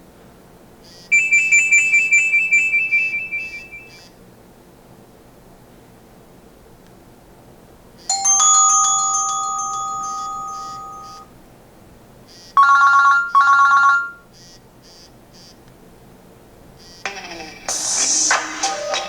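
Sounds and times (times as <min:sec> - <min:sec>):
bell-like phone chime: 0:01.1 - 0:03.9, 0:08.1 - 0:11.3, 0:12.6 - 0:14.2
short loud phone tones: 0:01.1 - 0:04.1, 0:12.6 - 0:14.5.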